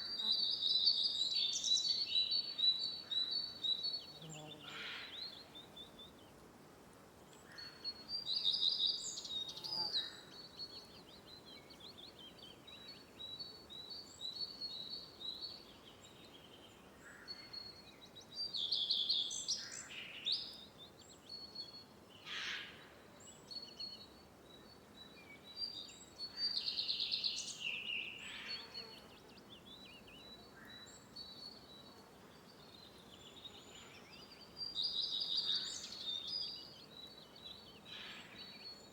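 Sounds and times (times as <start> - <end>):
birds twittering song: 7.3 - 38.9.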